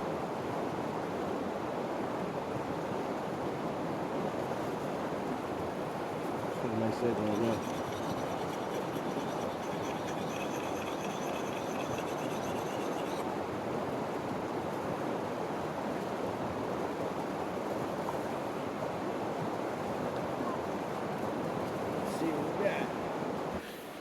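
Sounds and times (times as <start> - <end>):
creek water running: 3.6 - 13.5.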